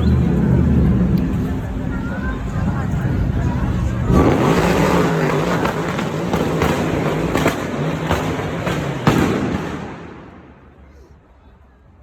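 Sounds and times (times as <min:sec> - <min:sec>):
noisy rumble: 0:00.0 - 0:11.7
fireworks bangs: 0:04.4 - 0:10.6.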